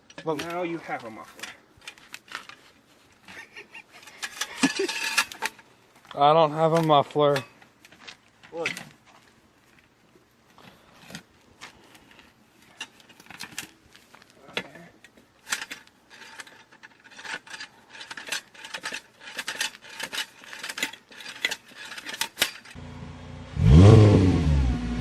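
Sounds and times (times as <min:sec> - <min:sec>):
metal scraping on metal: 0:03.3 - 0:05.6, 0:14.4 - 0:22.8
loud car engine revving: 0:22.8 - 0:25.0.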